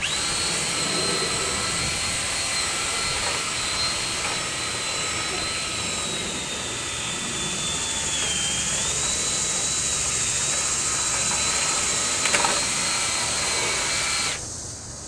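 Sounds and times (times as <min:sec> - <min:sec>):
blower rushing air with motor whine: 0:00.0 - 0:15.0.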